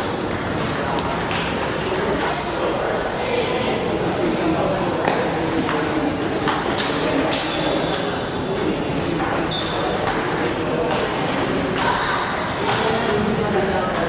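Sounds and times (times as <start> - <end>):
short high squeaks: 1.2 - 2.8.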